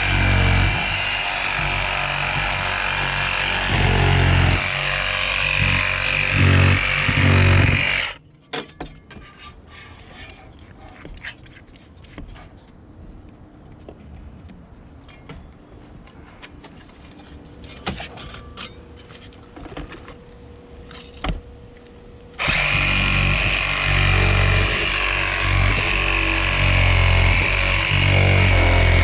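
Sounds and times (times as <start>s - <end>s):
power tool whining: 0.0s - 8.2s, 22.4s - 29.0s.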